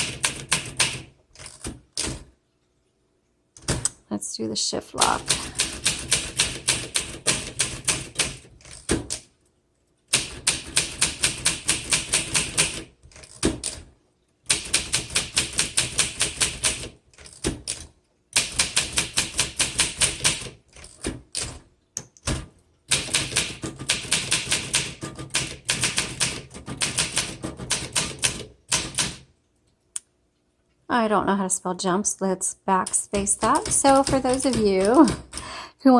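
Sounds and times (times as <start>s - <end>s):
manual typewriter keystrokes: 0.0s - 2.4s, 5.0s - 9.4s, 10.1s - 29.3s, 32.8s - 35.6s.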